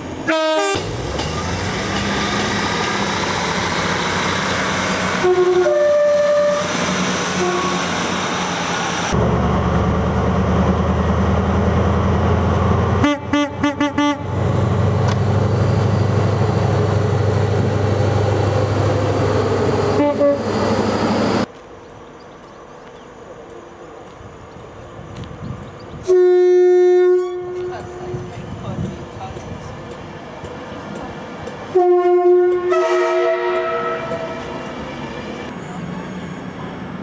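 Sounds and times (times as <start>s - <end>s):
train rumbling: 0.0s - 37.0s
loud horn blast: 0.2s - 0.9s, 5.1s - 8.0s, 13.0s - 14.4s, 19.9s - 20.5s, 26.0s - 28.3s, 31.7s - 34.5s
train horn toots: 0.2s - 0.9s, 5.1s - 8.0s, 13.0s - 14.4s, 20.0s - 20.5s, 26.0s - 28.3s, 31.7s - 34.6s.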